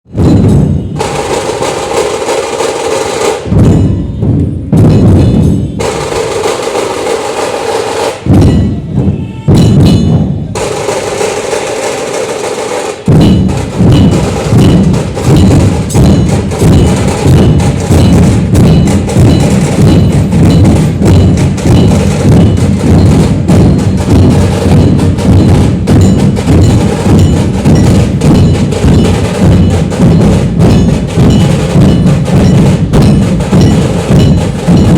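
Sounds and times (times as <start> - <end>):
drums being played: 0.1 - 34.9.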